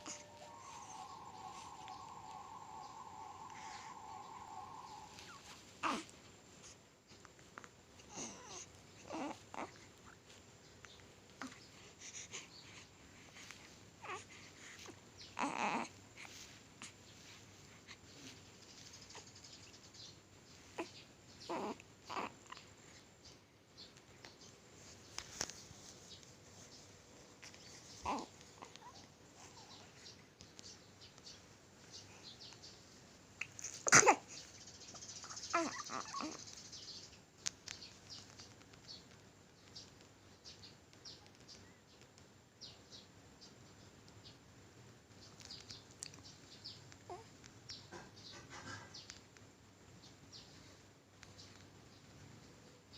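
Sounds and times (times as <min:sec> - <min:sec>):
faint high chirps: 0:00.0 - 0:06.0, 0:33.4 - 0:38.4
baby sneezing: 0:33.8 - 0:34.4.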